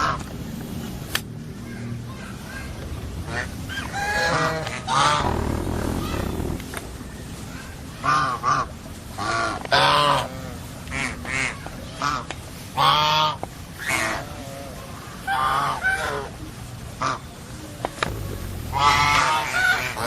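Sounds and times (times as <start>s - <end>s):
honking animal calls: 18.0s - 20.0s.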